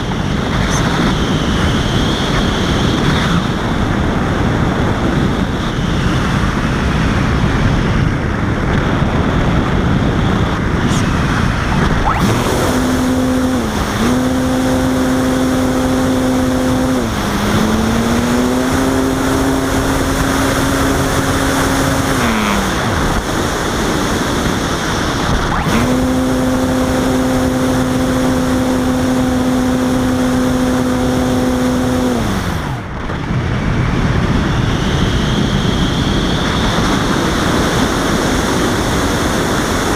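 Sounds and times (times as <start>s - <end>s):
wind rushing over glider: 0.0s - 39.9s
electric motor whine: 10.8s - 32.9s.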